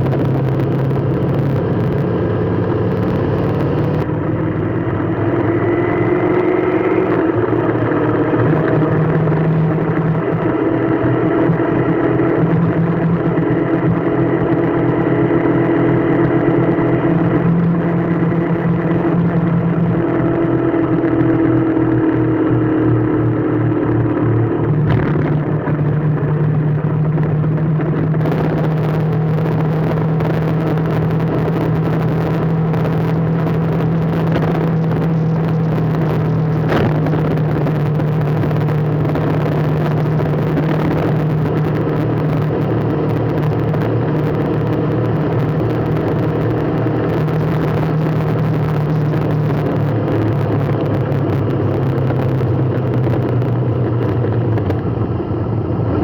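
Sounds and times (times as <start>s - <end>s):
road noise: 0.0s - 56.0s
vehicle engine running: 0.0s - 56.0s.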